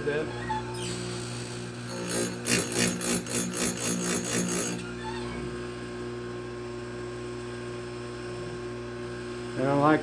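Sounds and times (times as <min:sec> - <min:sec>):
motor humming: 0:00.0 - 0:06.1
grinding wheel rasping on metal: 0:00.1 - 0:05.5.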